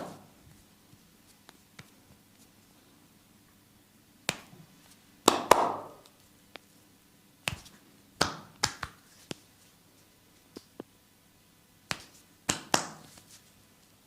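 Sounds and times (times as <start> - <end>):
hands slapping and snapping: 4.2 - 4.6, 5.2 - 6.6, 7.4 - 9.4, 11.9 - 13.4.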